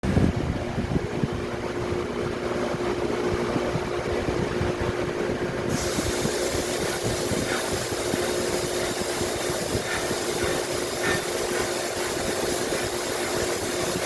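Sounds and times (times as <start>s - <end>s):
high air hiss: 5.7s - 14.0s
sandblasting equipment humming: 5.7s - 14.0s.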